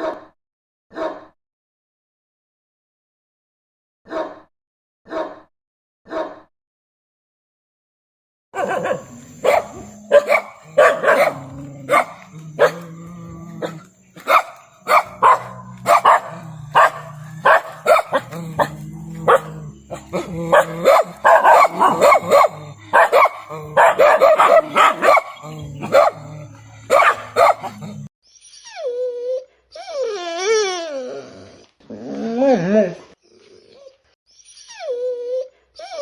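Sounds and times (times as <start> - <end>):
dog barking: 0.0 - 0.3, 0.9 - 1.4, 4.1 - 4.5, 5.1 - 5.5, 6.1 - 6.5, 8.6 - 12.9, 13.6 - 28.0.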